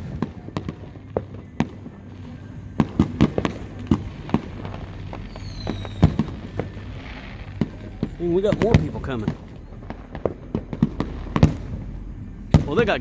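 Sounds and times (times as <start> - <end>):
firework whistle: 0.0 - 13.0
fireworks bangs and pops: 0.0 - 13.0.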